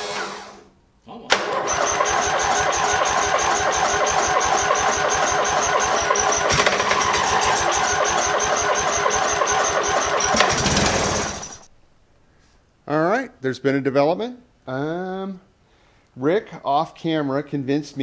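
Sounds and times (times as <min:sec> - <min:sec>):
high starter whine: 0:01.3 - 0:11.7
starter cranking engine: 0:01.4 - 0:11.7.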